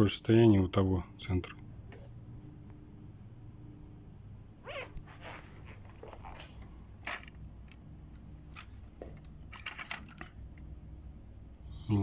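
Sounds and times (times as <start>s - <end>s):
steady low hum: 0.0s - 12.0s
handling clicks and rustles: 4.9s - 10.7s.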